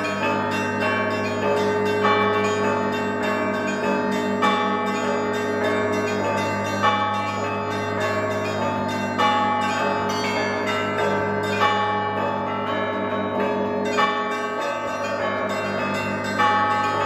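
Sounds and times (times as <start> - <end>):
large bell hum: 0.0 - 17.0
small church bells ringing: 0.0 - 17.0.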